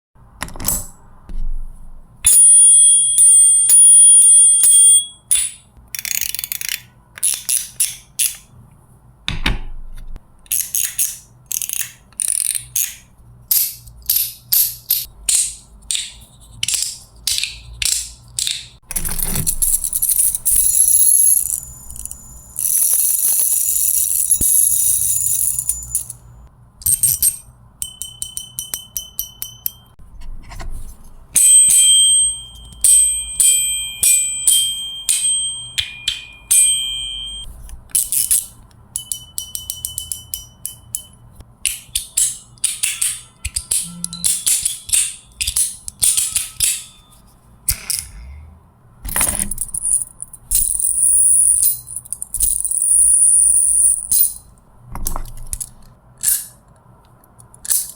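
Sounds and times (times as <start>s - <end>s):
toy spinner whirring: 19.4s - 26.2s
bright metallic ring: 31.4s - 37.5s, 43.0s - 44.9s.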